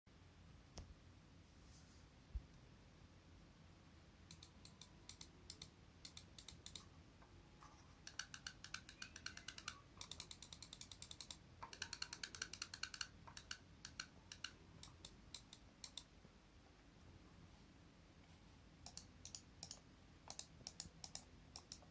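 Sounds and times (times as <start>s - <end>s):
mouse buttons clicking: 4.3s - 6.9s, 7.7s - 16.1s, 18.8s - 21.9s.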